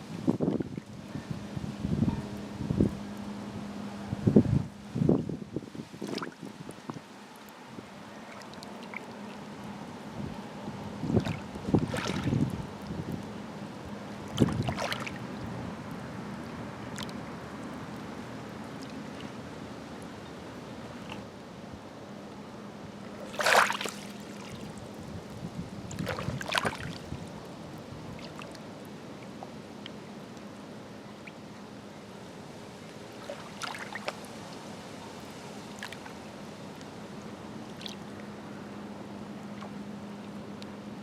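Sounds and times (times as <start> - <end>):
low hum: 0.0 - 5.6
waves lapping on rocks: 11.0 - 13.3, 14.2 - 15.5, 23.1 - 25.2, 25.8 - 29.4, 32.9 - 38.1.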